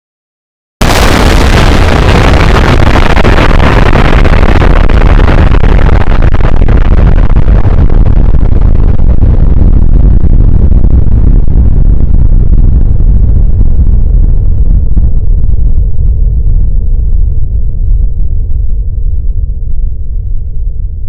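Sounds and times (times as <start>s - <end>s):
explosion hiss: 0.8s - 9.0s
explosion deep rumble: 0.8s - 21.0s.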